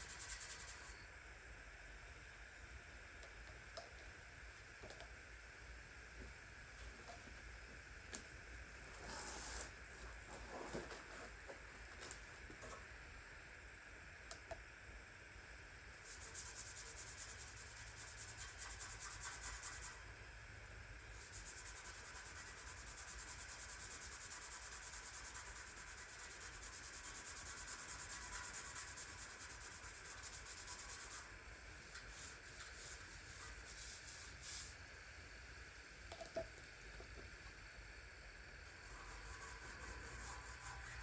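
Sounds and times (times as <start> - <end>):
faint fast rubbing: 38.8 - 41.0.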